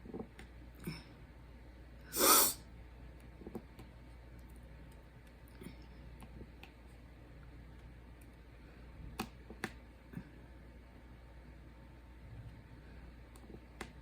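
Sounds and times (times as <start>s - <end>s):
person's sharp breath: 2.1s - 2.6s.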